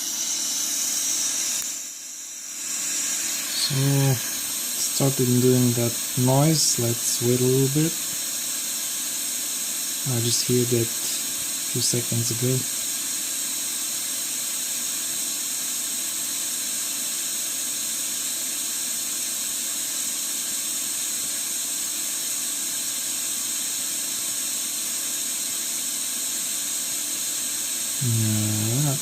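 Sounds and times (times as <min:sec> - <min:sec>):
preamp electronic hiss: 0:00.0 - 0:13.6, 0:25.1 - 0:29.0.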